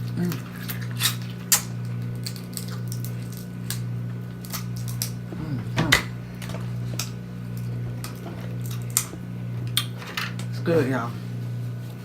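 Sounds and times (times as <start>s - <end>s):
steady low hum: 0.0s - 12.0s
brief low vocal sound: 5.3s - 6.1s.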